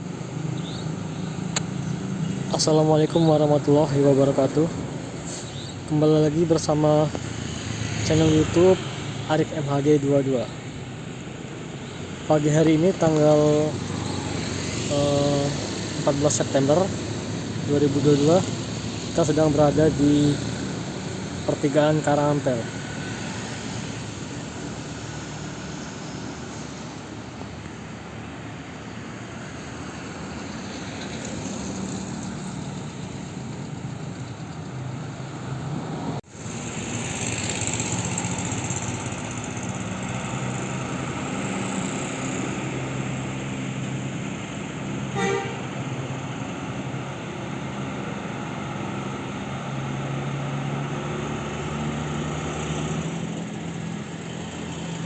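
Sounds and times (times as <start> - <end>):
bus engine rumble: 0.0 - 55.0
short horn toot: 45.1 - 45.7.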